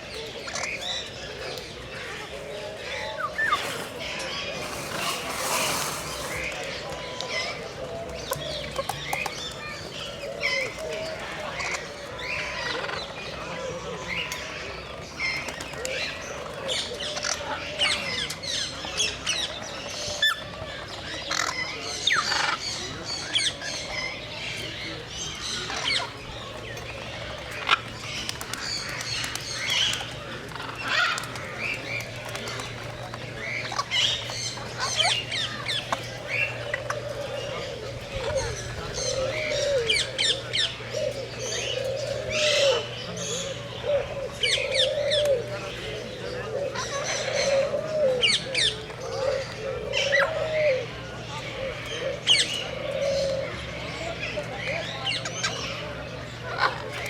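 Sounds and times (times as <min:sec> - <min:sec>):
low arching bird calls: 0:00.0 - 0:57.0
macaws squawking and chirping: 0:30.6 - 0:57.0.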